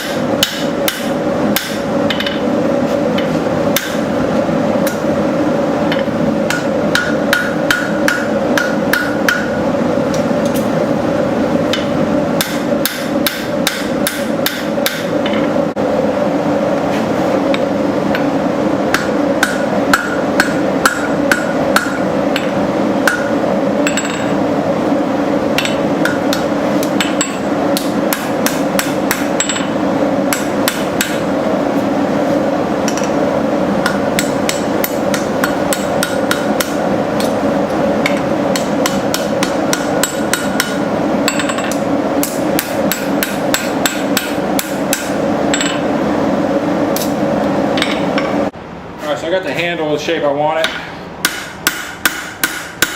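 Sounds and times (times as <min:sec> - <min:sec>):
hammer striking steel on anvil: 0:00.0 - 0:02.5, 0:03.2 - 0:04.1, 0:04.8 - 0:05.0, 0:05.9 - 0:10.7, 0:11.7 - 0:15.5, 0:18.9 - 0:24.4, 0:25.6 - 0:31.3, 0:33.8 - 0:37.4, 0:38.0 - 0:45.9, 0:50.6 - 0:52.9
steady background hum: 0:00.0 - 0:52.9.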